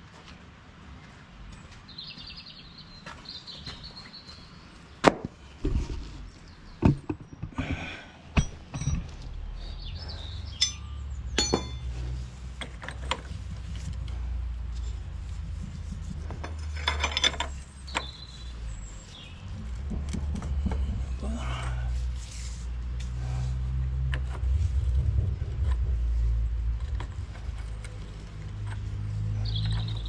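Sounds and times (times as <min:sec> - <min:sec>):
birds chirping: 0:01.5 - 0:12.1, 0:17.4 - 0:22.1, 0:27.4 - 0:30.0
low steady rumble: 0:07.5 - 0:30.0
metallic clinks and knocks: 0:08.4 - 0:09.3, 0:10.5 - 0:13.3, 0:16.3 - 0:18.0.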